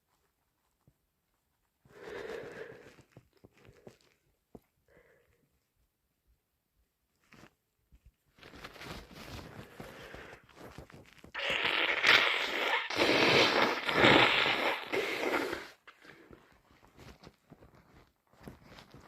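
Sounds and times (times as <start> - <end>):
wet gurgly nose blowing: 11.3 - 16.4.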